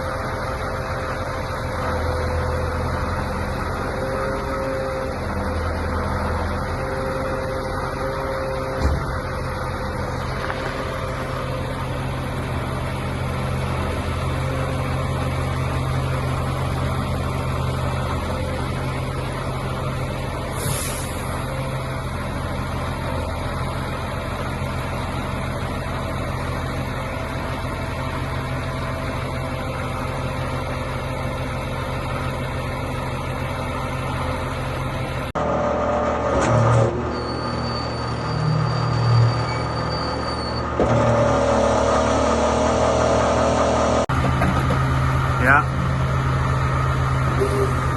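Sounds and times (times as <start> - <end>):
diesel engine running: 0.0 - 47.9.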